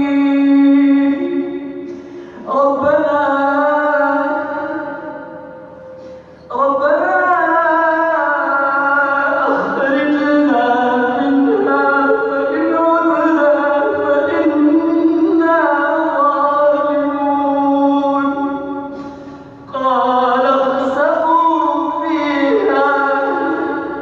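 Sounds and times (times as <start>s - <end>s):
man chanting melodically: 0.0s - 24.0s.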